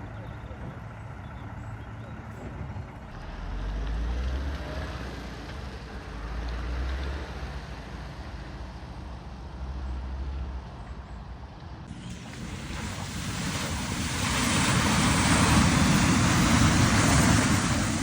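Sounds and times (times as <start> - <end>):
road and engine noise: 0.0 - 18.0
deep rumble: 11.9 - 18.0.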